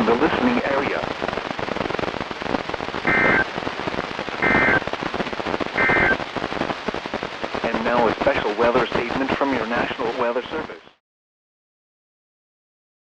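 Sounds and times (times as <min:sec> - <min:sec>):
radio static: 0:00.0 - 0:11.0
two-tone data screech: 0:03.1 - 0:03.5, 0:04.4 - 0:04.8, 0:05.8 - 0:06.2.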